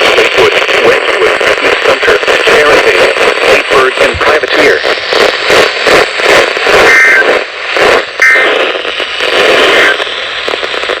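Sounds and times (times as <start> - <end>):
radio static hiss and crackle: 0.0 - 11.0
two-tone data bursts: 2.0 - 11.0.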